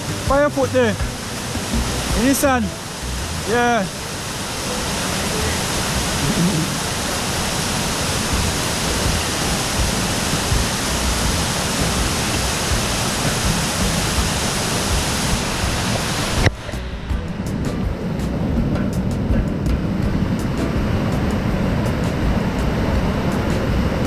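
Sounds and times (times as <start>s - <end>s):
waterfall water rushing: 0.0s - 17.1s.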